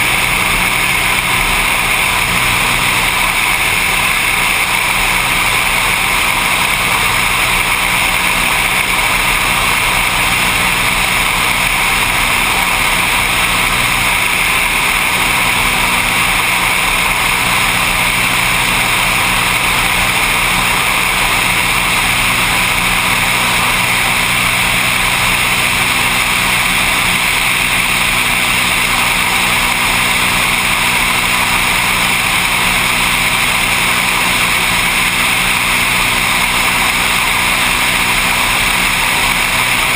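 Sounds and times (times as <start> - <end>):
propeller plane engine droning: 0.0 - 39.9.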